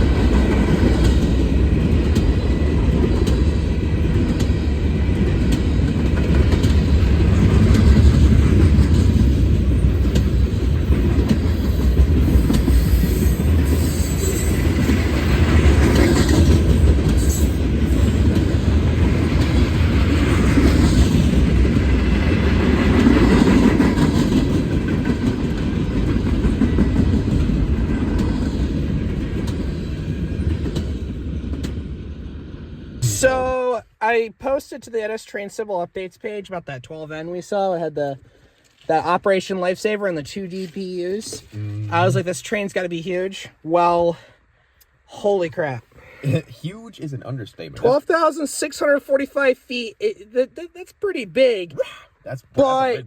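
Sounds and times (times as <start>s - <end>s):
wheels clacking over rail joints: 0.0s - 13.7s
freight train rumble: 0.0s - 33.7s.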